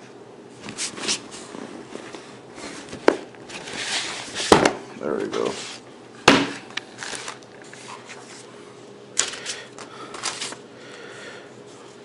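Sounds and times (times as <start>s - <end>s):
packaging rustling: 6.9s - 7.5s.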